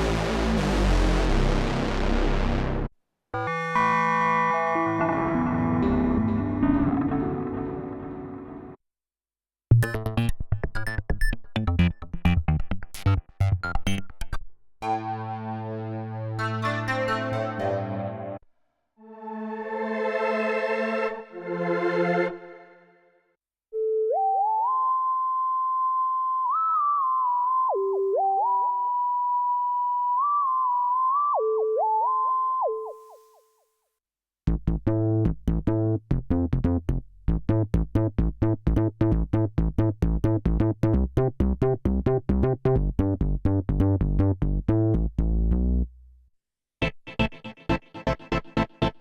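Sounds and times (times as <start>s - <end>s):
low synth bass: 0.0s - 2.9s, 34.5s - 46.0s
synthesizer plucked note sequence: 0.0s - 8.8s, 9.7s - 18.4s.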